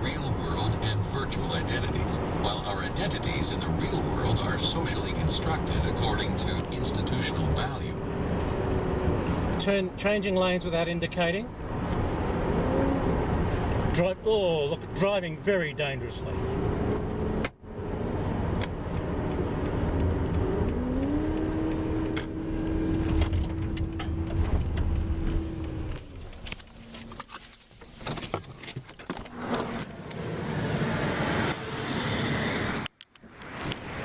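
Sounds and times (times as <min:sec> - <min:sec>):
car road and engine rumble: 0:00.0 - 0:34.0
rising hum: 0:16.3 - 0:26.4.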